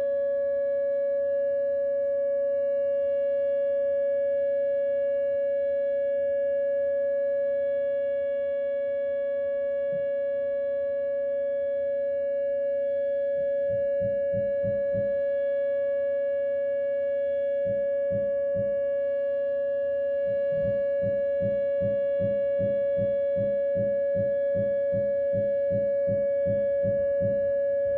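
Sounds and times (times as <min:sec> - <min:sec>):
warning siren steady tone: 0:00.0 - 0:27.9
low hammering thumps: 0:20.5 - 0:27.4.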